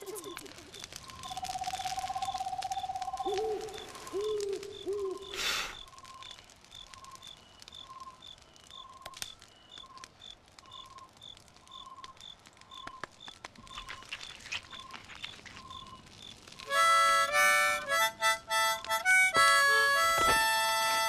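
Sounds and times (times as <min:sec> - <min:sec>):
low cooing hoots: 0:03.1 - 0:05.4.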